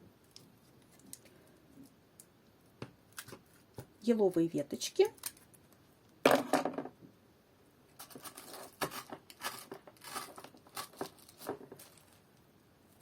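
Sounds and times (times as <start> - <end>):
sprigs and tissue paper rustling: 8.0 - 13.0.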